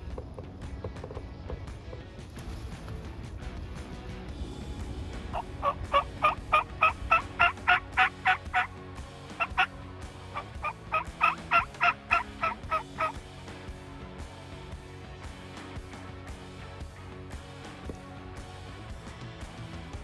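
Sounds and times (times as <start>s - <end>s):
turkey yelping: 5.4s - 8.7s, 9.4s - 9.7s, 10.4s - 13.2s.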